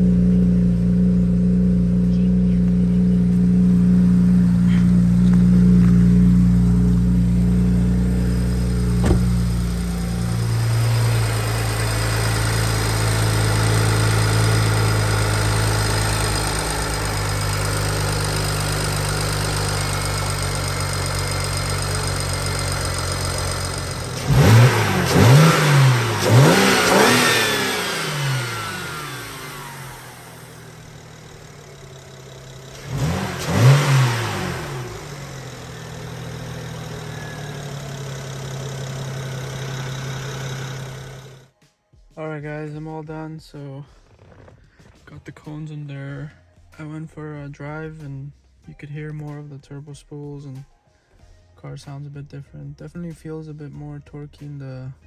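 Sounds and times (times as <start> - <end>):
car engine idling: 0.0 - 41.5
engine revving: 0.0 - 41.5.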